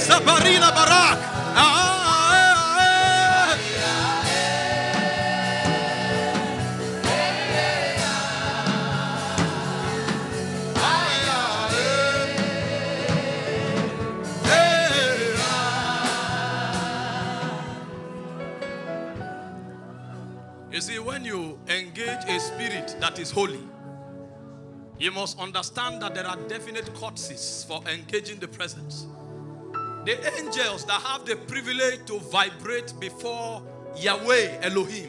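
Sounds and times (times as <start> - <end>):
gospel worship singing: 0.0 - 19.3
instrumental accompaniment: 0.0 - 27.0.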